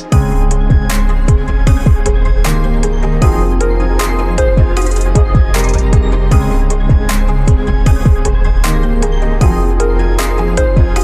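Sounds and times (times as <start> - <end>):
deep kick drums: 0.1 - 2.6, 4.4 - 8.7.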